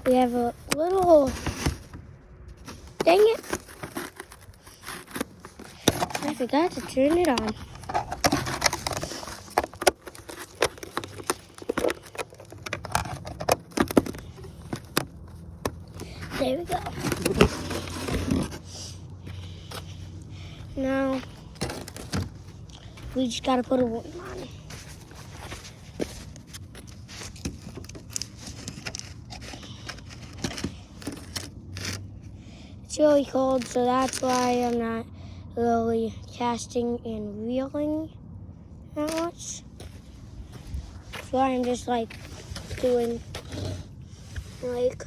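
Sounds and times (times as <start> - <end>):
low background rumble: 0.0 - 45.0
hands handling small gear: 2.6 - 20.1.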